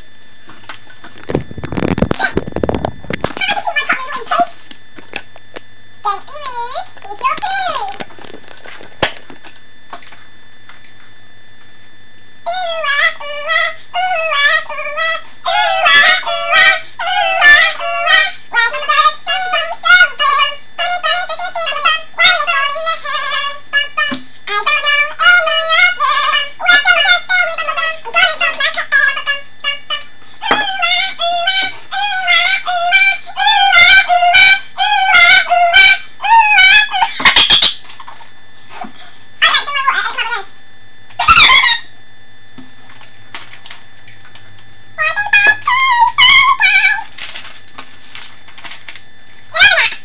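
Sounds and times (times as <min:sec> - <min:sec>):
sped-up high-pitched singing voice: 0:12.5 - 0:37.4, 0:45.0 - 0:47.1.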